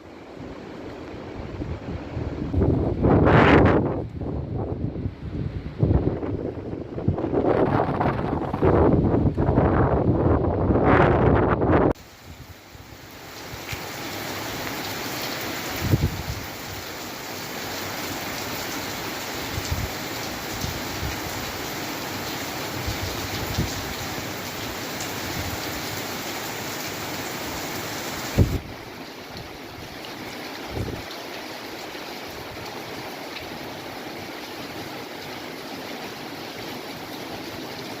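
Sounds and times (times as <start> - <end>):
steady rain falling: 0.0 - 10.6, 11.8 - 38.0
wind gust on microphone: 0.4 - 13.7, 15.7 - 16.9, 19.4 - 21.6, 22.7 - 24.2, 27.6 - 28.8, 30.6 - 31.1.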